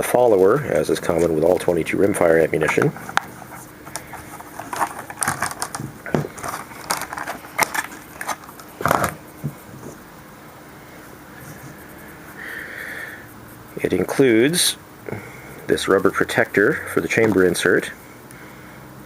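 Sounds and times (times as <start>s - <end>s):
faint room hum: 0.0s - 19.0s
small metal parts clicking: 3.9s - 9.2s.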